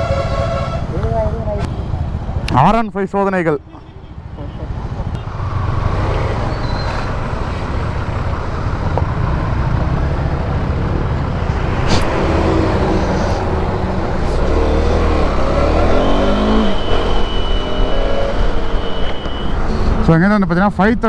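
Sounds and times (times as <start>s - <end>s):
rushing wind: 4.2s - 21.0s.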